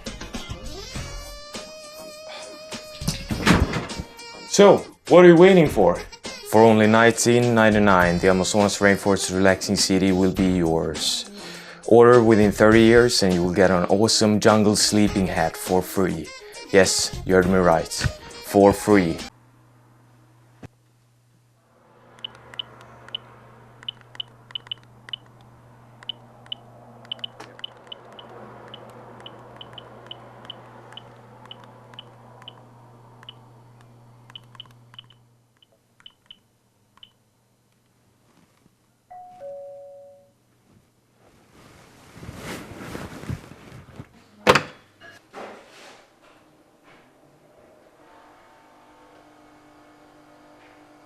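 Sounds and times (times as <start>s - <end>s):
two-tone doorbell ding-dong: 39.1s - 40.4s.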